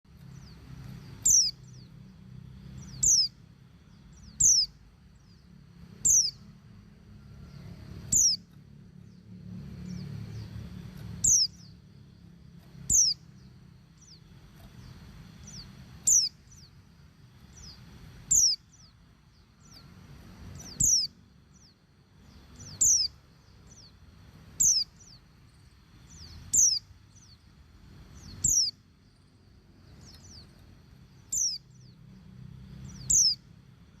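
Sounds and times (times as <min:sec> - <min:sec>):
bird high falling chirps: 0:00.3 - 0:01.8, 0:04.2 - 0:04.8, 0:11.2 - 0:11.8, 0:12.6 - 0:16.8, 0:17.5 - 0:19.0, 0:20.5 - 0:23.9.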